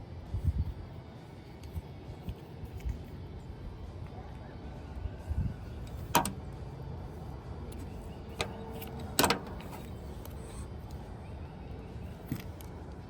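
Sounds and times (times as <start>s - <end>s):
steady low background hum: 0.0s - 13.0s
clicks and knocks of hard parts: 6.1s - 6.4s, 8.4s - 9.9s.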